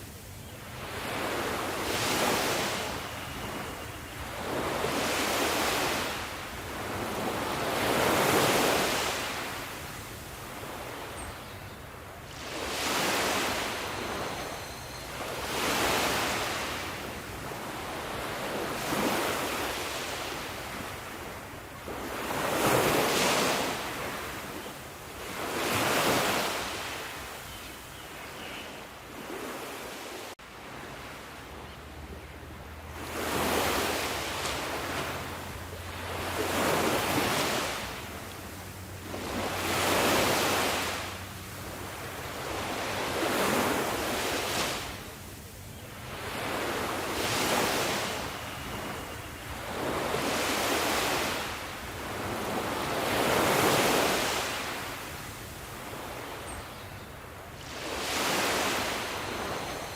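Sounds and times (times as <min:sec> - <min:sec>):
waves breaking ashore: 0:00.0 - 0:11.2, 0:12.1 - 0:27.3, 0:29.1 - 0:59.9.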